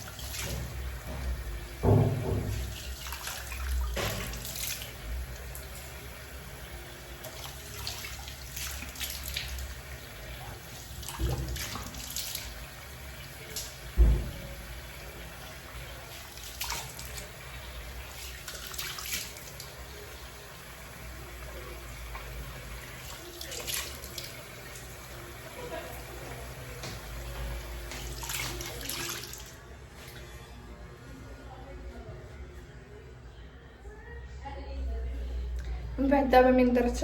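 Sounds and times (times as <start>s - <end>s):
tap water running into sink: 0.0s - 29.6s
dull thump: 14.0s - 14.6s
hands splashing water: 27.9s - 30.3s.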